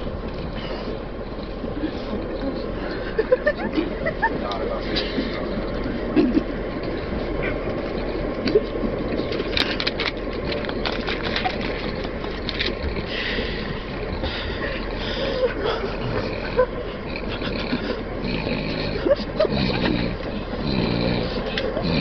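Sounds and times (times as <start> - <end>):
train carriage rumbling and rattling: 0.0 - 22.0
man snoring: 16.1 - 22.0.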